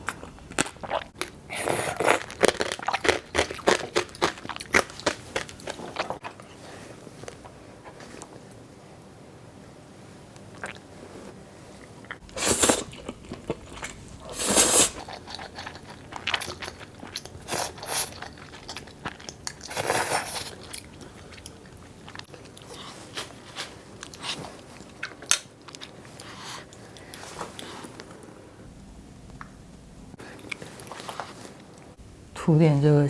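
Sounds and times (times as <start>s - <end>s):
chewing and crunching: 0.0s - 6.6s, 11.8s - 28.3s.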